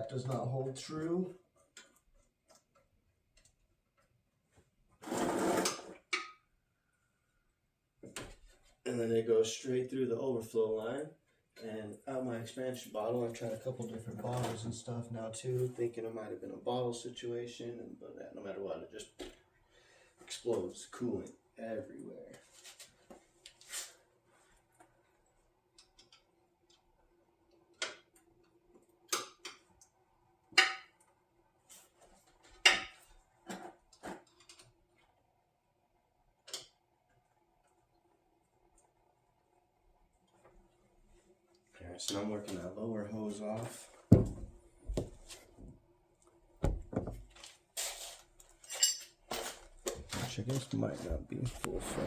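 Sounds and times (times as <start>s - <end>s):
knocks and thunks on hose: 44.1s - 45.2s, 46.6s - 47.3s.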